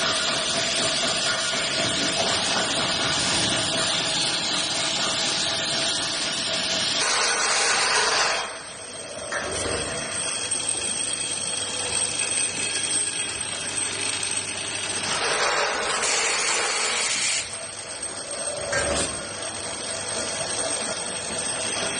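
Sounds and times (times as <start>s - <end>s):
machine hissing: 0.0s - 8.6s, 15.0s - 17.5s
machine whine and hum: 0.0s - 21.9s.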